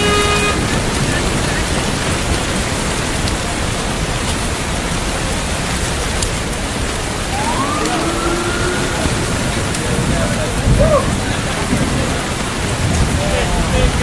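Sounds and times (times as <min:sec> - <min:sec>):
steady rain hiss: 0:00.0 - 0:14.0
faint rising tone: 0:07.3 - 0:09.9.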